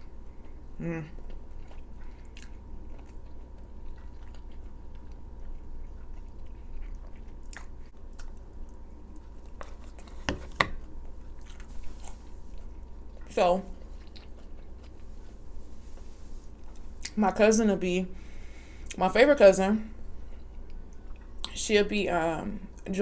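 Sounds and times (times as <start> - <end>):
person chewing: 0.0 - 17.2.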